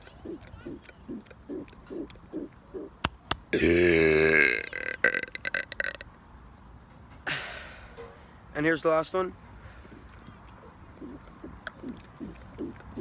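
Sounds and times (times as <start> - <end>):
man burping loudly: 3.5 - 6.0.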